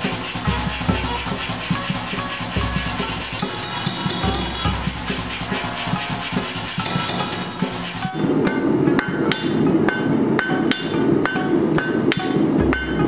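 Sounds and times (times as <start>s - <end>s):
music with fast beat: 0.0s - 13.0s.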